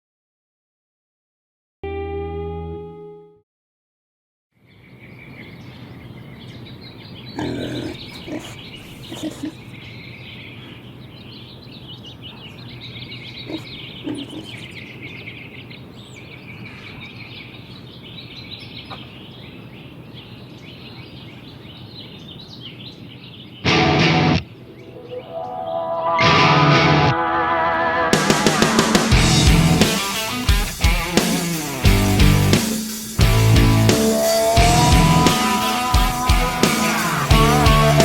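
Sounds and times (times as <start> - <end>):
many birds chirping: 4.6 - 26.2.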